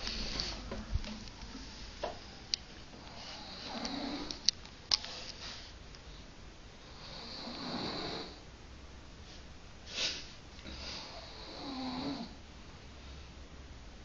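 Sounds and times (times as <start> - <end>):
slow snoring: 3.1 - 4.4, 6.8 - 8.4, 10.6 - 12.4.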